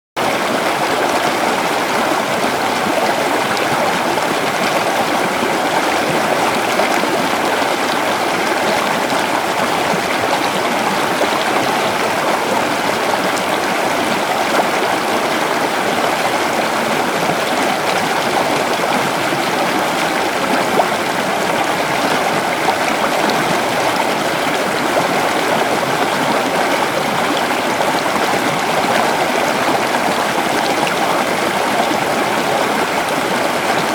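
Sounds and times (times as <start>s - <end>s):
river water rushing and gurgling: 0.2s - 33.9s.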